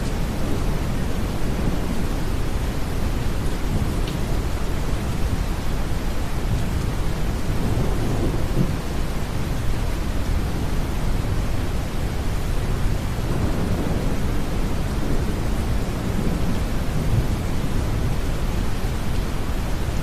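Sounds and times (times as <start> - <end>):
distant thunder rumble: 0.0 - 4.5, 13.0 - 18.7
steady rain: 0.0 - 20.0.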